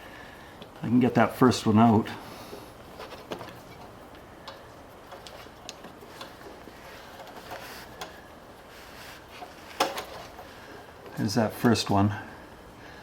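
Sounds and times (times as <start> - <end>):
small metal clicks: 3.3 - 8.2.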